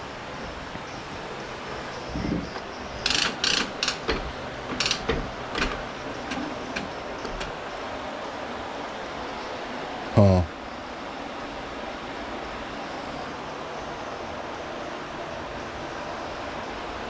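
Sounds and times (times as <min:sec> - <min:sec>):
sharp mechanical clicks and rattles: 0:03.0 - 0:07.6.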